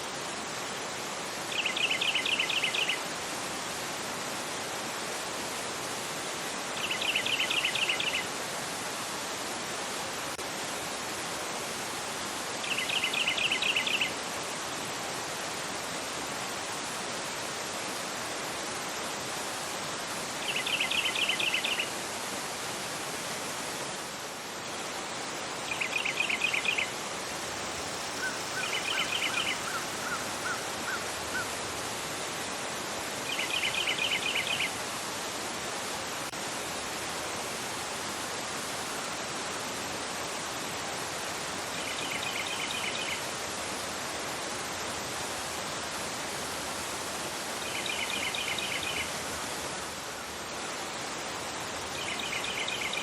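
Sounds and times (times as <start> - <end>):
river rushing over rocks: 13.4 - 53.0.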